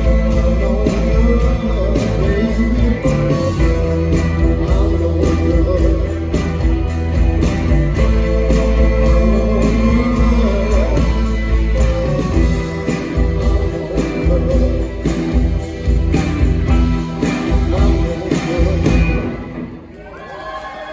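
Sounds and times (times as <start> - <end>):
live rock band playing: 0.0 - 20.0
person singing: 0.0 - 20.9.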